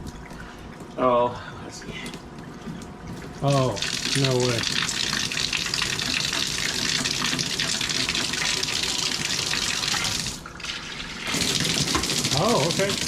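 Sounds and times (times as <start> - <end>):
water running from bathtub tap: 2.7 - 13.0.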